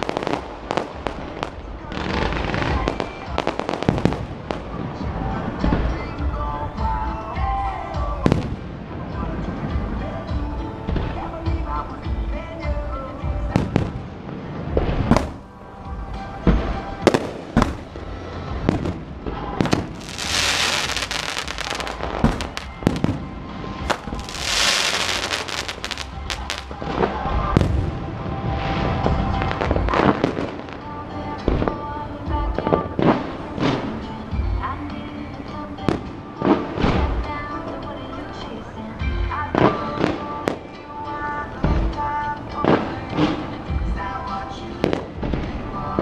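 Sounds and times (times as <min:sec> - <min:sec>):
fireworks crackling: 0:00.0 - 0:07.0, 0:12.7 - 0:34.4
fireworks bursting with sharp bangs: 0:00.0 - 0:10.0, 0:12.7 - 0:34.4, 0:35.5 - 0:37.5, 0:39.5 - 0:46.0
music: 0:00.0 - 0:46.0.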